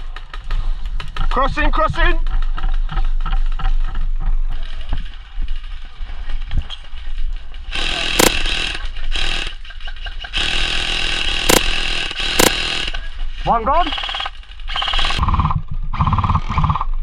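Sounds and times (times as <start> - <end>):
sharp cracks: 7.6 - 13.2
airsoft gun full-auto bursts: 7.7 - 13.1, 13.8 - 15.2.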